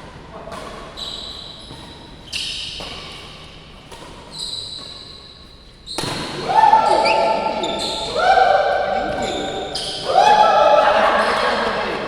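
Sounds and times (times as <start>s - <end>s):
shoes squeaking: 0.8s - 10.2s
racket hitting shuttlecock: 1.6s - 5.2s, 5.9s - 12.0s.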